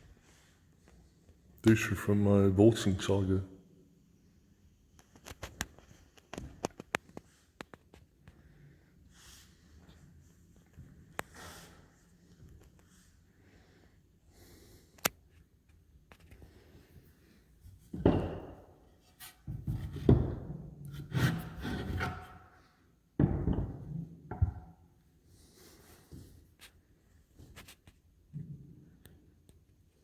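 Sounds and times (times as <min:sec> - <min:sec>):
knocking and thumping handling noise: 0:17.8 - 0:18.7, 0:23.2 - 0:24.7.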